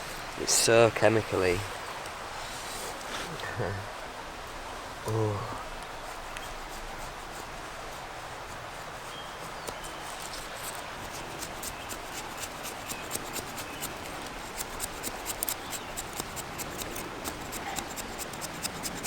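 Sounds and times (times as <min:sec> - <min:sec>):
knife scraping wood: 0:09.1 - 0:19.0.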